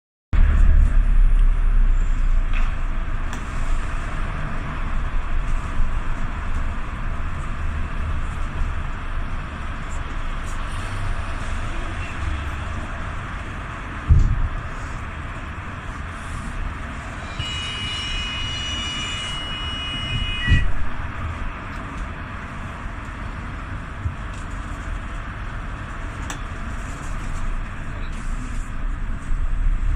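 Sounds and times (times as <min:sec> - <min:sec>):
traffic passing with deep rumble: 0:00.4 - 0:29.9
heavy thump: 0:14.0 - 0:14.6
high steady squeal: 0:17.0 - 0:21.1.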